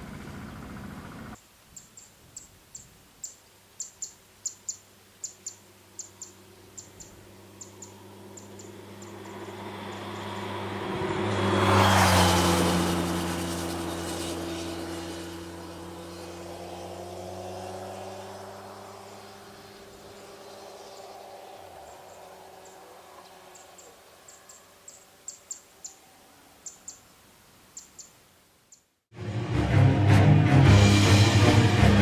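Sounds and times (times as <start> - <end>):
vehicle engine humming: 0.0 - 1.4, 4.8 - 28.5.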